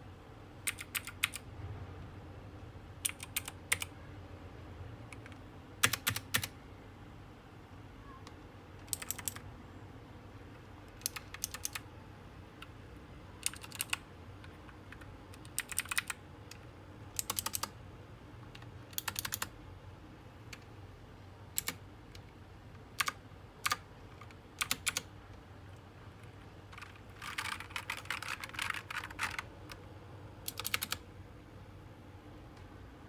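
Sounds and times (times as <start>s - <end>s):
clicky keyboard typing: 0.6s - 1.4s, 3.0s - 3.9s, 5.1s - 6.6s, 8.2s - 9.4s, 10.9s - 11.9s, 13.4s - 17.8s, 18.4s - 19.5s, 21.6s - 22.3s, 23.0s - 25.1s, 26.2s - 29.8s, 30.4s - 31.0s.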